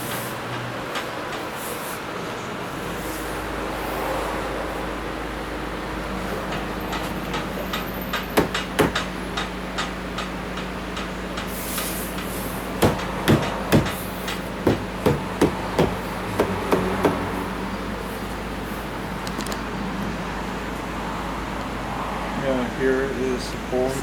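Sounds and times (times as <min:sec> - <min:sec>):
sharp knocks on car door panel: 0:08.4 - 0:09.2, 0:12.8 - 0:17.4.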